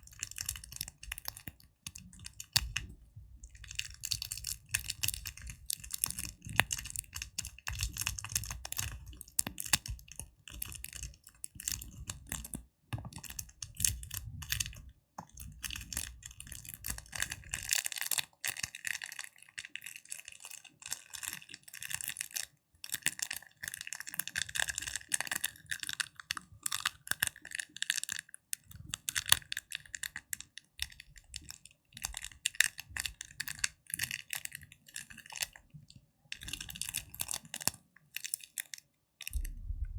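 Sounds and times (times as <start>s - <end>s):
dull low tapping: 39.3s - 39.9s.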